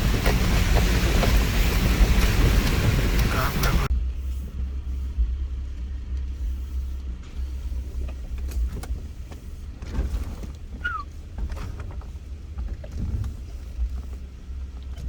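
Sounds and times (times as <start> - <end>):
knocks and rattles of suspension: 0.0 - 3.9, 7.2 - 15.0
vehicle driving over rocks: 0.0 - 3.9, 7.2 - 15.0
short falling squeak: 10.8 - 11.1.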